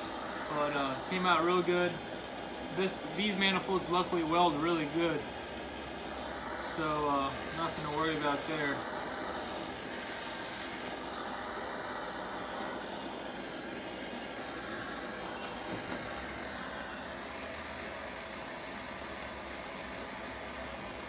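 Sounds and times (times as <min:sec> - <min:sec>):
torch flame hissing: 0:00.0 - 0:21.0
thermometer short high beep: 0:15.4 - 0:15.7, 0:16.8 - 0:17.1.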